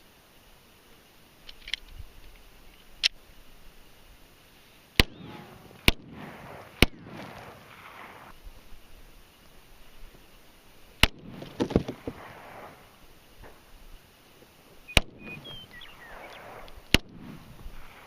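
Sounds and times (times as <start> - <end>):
pistol shots echoing: 5.0 - 8.3, 14.9 - 18.0.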